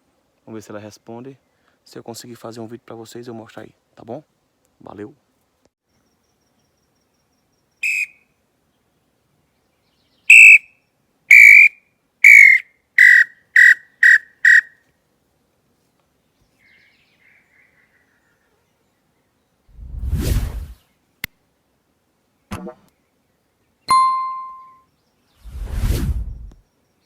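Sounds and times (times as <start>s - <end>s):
whistled bird call: 7.8s - 8.3s, 10.3s - 14.8s.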